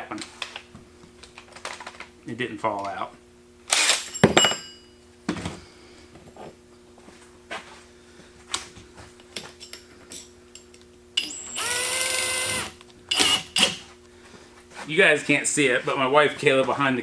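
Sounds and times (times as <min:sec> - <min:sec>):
cordless drill motor whine: 0:11.2 - 0:13.7.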